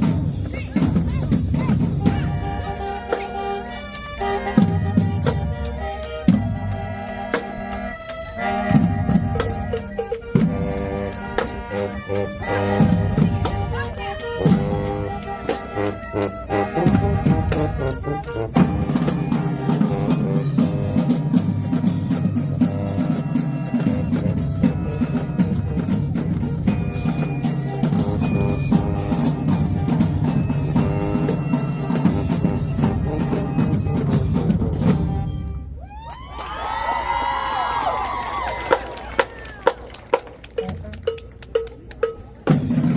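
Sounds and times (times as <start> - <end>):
brass chords: 0.0 - 35.8
marching drums: 0.0 - 35.8, 37.2 - 42.9.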